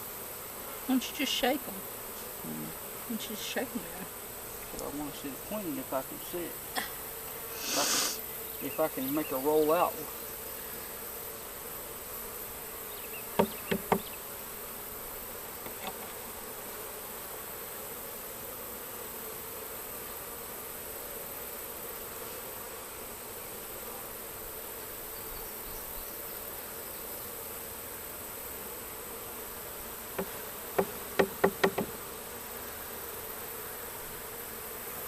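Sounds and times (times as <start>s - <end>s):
bee swarm buzzing: 0.0s - 35.0s
sharp knocks: 13.4s - 14.1s, 30.2s - 32.0s.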